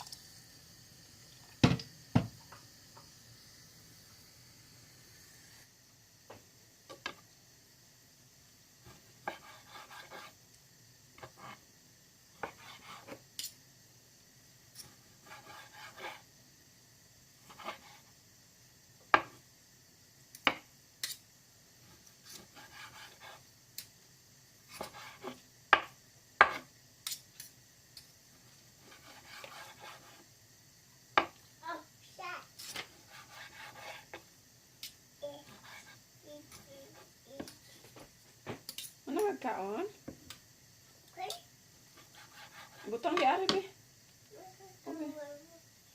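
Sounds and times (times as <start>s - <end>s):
dishes knocking and clinking: 1.6s - 2.6s.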